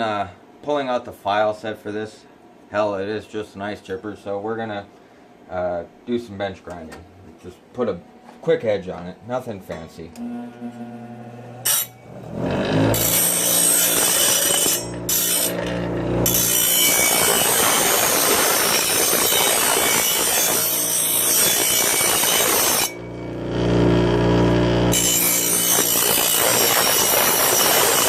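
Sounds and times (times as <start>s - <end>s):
bench grinder grinding steel: 10.2s - 28.0s
grinder motor humming: 10.2s - 28.0s.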